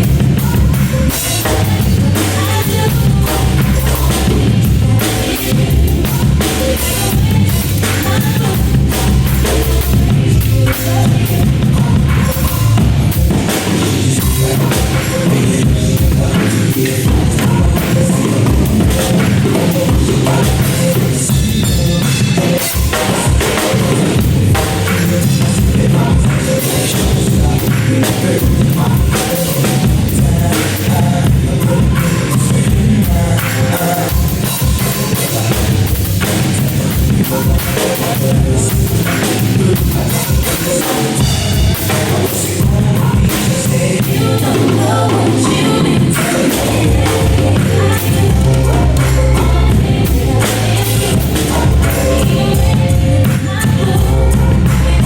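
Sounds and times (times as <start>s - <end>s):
bass drum: 0.0s - 55.0s
drum kit played hard: 0.0s - 55.0s
rock backing track: 0.0s - 55.0s.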